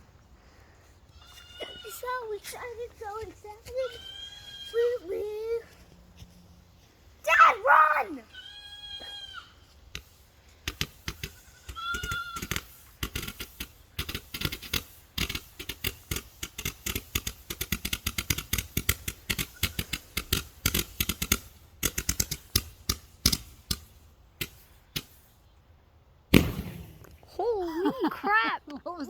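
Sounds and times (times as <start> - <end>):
firework crackling pops: 9.9 - 25.3, 26.3 - 27.3
loud firework bang: 26.3 - 27.2.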